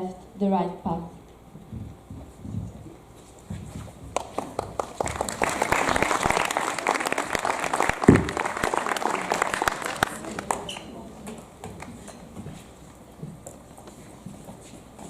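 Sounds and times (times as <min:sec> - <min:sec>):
audience applauding: 0:04.2 - 0:11.0.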